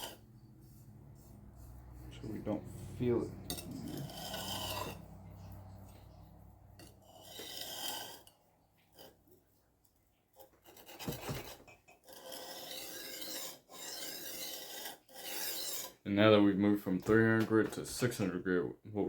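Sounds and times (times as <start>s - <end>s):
knife scraping sharpening plate: 0.0s - 0.2s, 3.3s - 9.2s, 10.4s - 16.0s.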